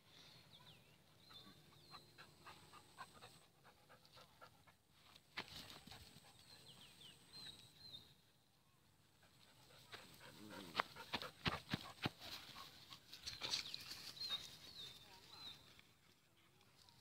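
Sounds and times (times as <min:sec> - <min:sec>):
dog panting: 0:01.8 - 0:04.8, 0:09.2 - 0:12.7.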